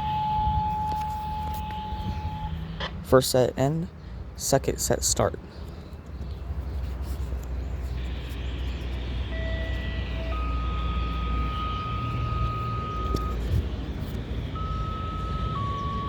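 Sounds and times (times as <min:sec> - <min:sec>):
radio beeps of different pitches: 0:00.0 - 0:02.6, 0:09.2 - 0:13.5, 0:14.5 - 0:16.0.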